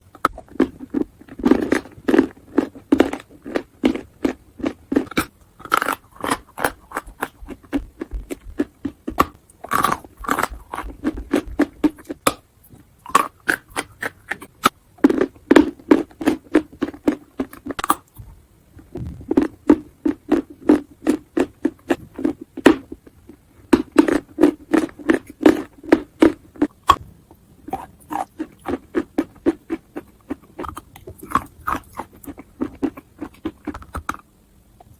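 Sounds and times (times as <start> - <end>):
chewing chalk crunches: 0.2 - 12.4, 13.0 - 18.2, 27.7 - 34.2.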